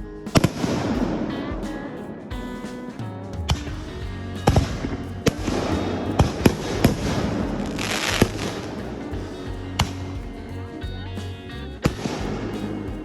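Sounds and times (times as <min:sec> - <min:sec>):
fireworks bursting with sharp bangs: 0:00.0 - 0:10.5
background music: 0:00.0 - 0:13.0
fireworks crackling hiss: 0:04.4 - 0:10.4.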